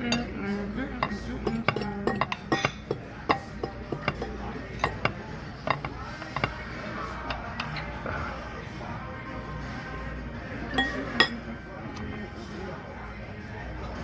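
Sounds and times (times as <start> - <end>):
cutlery clinking against a plate: 0.0 - 8.2, 10.7 - 12.1
chatter: 0.0 - 14.0
low background music: 0.0 - 14.0.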